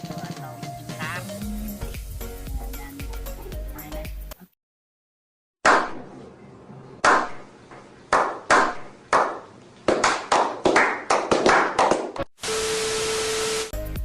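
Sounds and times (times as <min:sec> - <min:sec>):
sharp hand claps: 0:07.0 - 0:07.4, 0:08.1 - 0:12.3.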